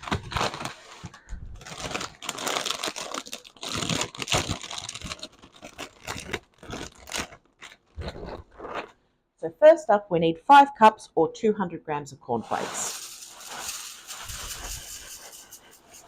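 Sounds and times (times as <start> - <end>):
plastic bag crinkling: 0.0 - 9.0, 12.4 - 16.0.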